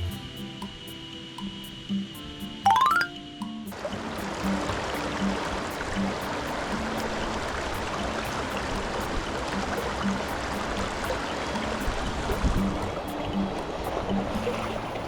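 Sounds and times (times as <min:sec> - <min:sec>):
stream rushing over rocks: 0:03.7 - 0:15.0.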